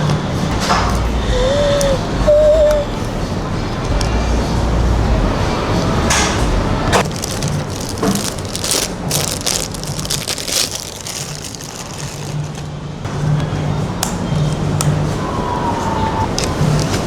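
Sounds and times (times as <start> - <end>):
packaging rustling and crinkling: 7.0 - 12.7, 16.3 - 17.0.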